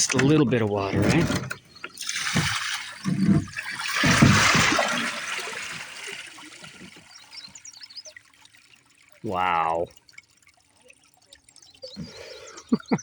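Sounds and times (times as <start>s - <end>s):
water rushing out of a canoe: 0.0s - 7.7s
low knocks from canoe hull: 2.2s - 4.9s.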